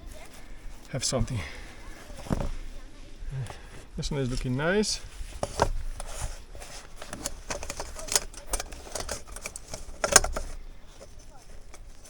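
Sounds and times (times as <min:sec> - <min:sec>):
clicks and knocks handling bread: 0:04.2 - 0:12.0.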